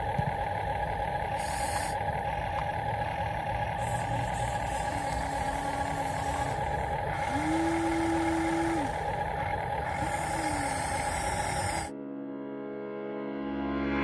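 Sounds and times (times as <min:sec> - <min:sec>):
model machinery motor whine: 0:00.0 - 0:11.9
music: 0:11.9 - 0:14.0.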